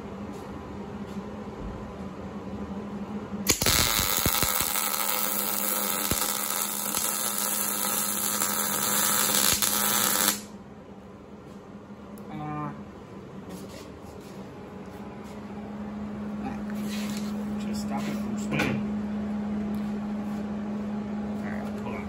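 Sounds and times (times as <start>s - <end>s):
steady low hum: 0.0s - 22.0s
welder arc crackling: 3.4s - 10.5s.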